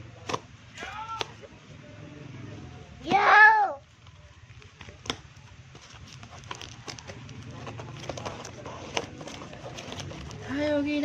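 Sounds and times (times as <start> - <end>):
packaging clicks and taps: 4.0 - 10.4.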